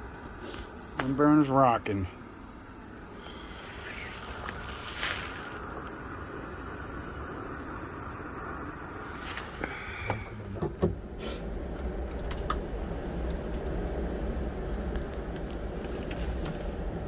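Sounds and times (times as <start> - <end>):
camping stove burning rumble: 0.0 - 17.0
sharp clicks and knocks: 10.1 - 11.0.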